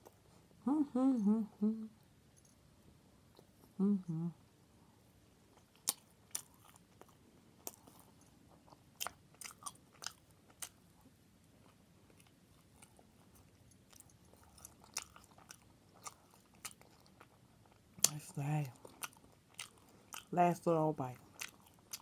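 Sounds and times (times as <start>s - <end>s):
person chewing wet smacks: 5.6s - 8.1s, 8.7s - 10.8s, 11.6s - 18.2s, 18.8s - 20.3s, 21.2s - 22.0s.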